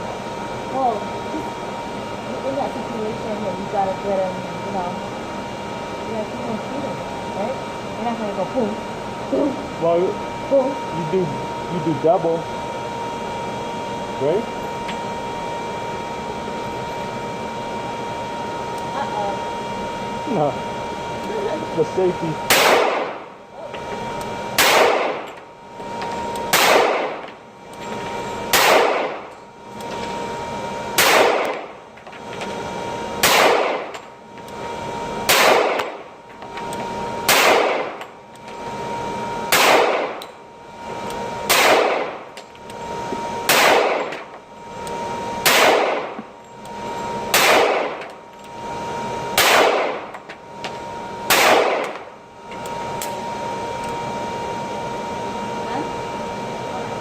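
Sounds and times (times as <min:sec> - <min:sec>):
pistol shots ringing: 0:22.5 - 0:23.2, 0:24.6 - 0:25.2, 0:26.5 - 0:27.2, 0:28.5 - 0:29.2, 0:31.0 - 0:31.6, 0:33.2 - 0:33.9, 0:35.3 - 0:36.0, 0:37.3 - 0:38.0, 0:39.5 - 0:40.2, 0:41.5 - 0:42.2, 0:43.5 - 0:44.2, 0:45.4 - 0:46.1, 0:47.3 - 0:48.0, 0:49.4 - 0:50.0, 0:51.3 - 0:52.0.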